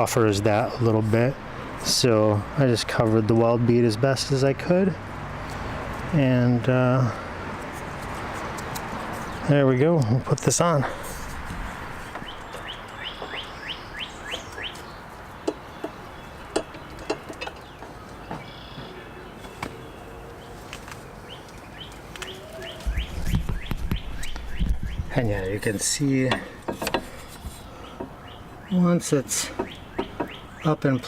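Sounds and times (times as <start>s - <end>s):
bird chirping: 10.9s - 31.0s
sharp clicks and knocks: 15.4s - 18.5s, 22.9s - 25.1s, 25.7s - 28.3s, 29.5s - 30.4s.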